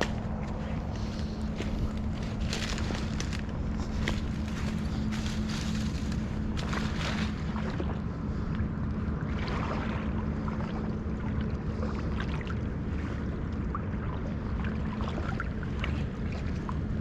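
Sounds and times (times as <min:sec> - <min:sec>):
small ticks and splashes: 0:00.0 - 0:08.0
creek water flowing: 0:00.0 - 0:10.6
low hum: 0:00.0 - 0:17.0.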